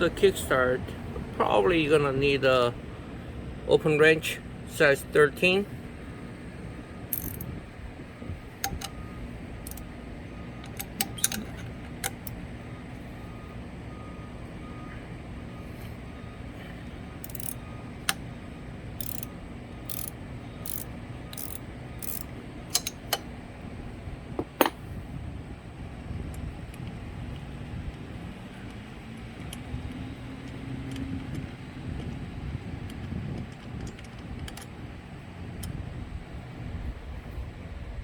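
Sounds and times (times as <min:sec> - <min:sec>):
steady low hum: 0:00.0 - 0:30.6
wrench clicks and clinks: 0:07.1 - 0:07.6, 0:08.6 - 0:09.0, 0:09.6 - 0:09.8, 0:10.6 - 0:12.4, 0:17.2 - 0:18.2, 0:19.0 - 0:19.3, 0:19.9 - 0:23.2.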